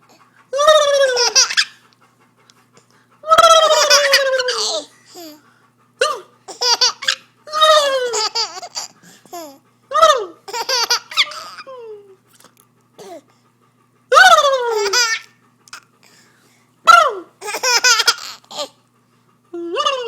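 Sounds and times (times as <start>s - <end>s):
baby laughing: 0.6s - 1.8s, 3.6s - 5.4s, 6.1s - 9.6s, 10.2s - 11.8s, 14.4s - 15.3s, 17.4s - 18.8s.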